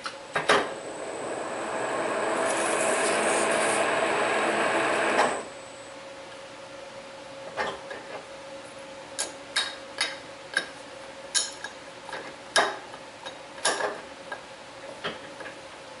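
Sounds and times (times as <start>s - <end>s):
steady hum: 0.0s - 7.4s.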